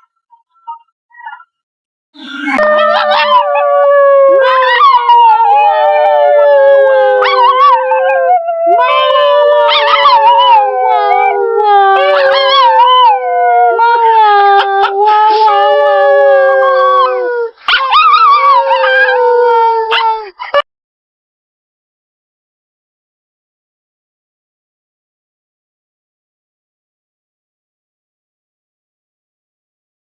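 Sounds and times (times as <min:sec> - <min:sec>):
dogs howling: 0:02.2 - 0:20.3.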